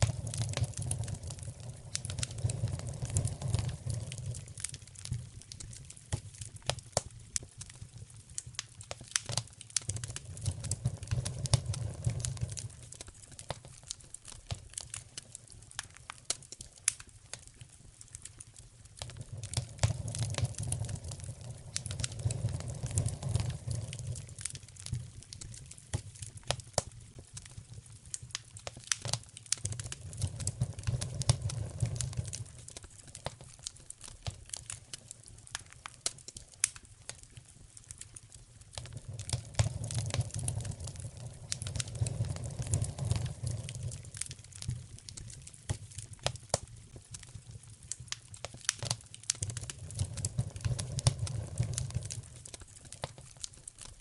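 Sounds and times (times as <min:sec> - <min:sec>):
wood fire crackling and popping: 0:00.0 - 0:54.0
low rumble: 0:19.2 - 0:24.8.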